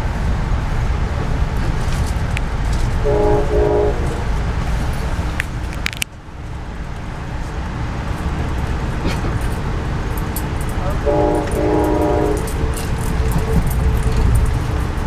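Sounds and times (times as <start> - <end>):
passenger train rumbling: 0.0 - 15.0
train horn chord: 3.0 - 4.4, 10.8 - 12.9.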